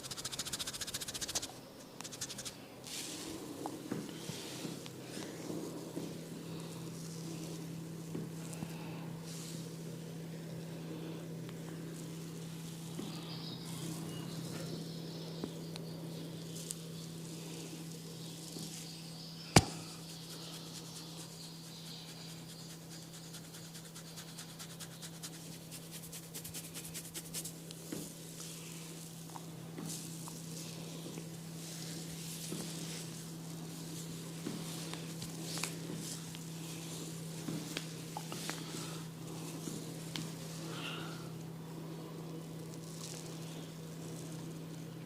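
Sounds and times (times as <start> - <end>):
fingers rubbing through hair: 0.0 - 3.4, 20.0 - 27.6
low steady hum: 0.0 - 45.0.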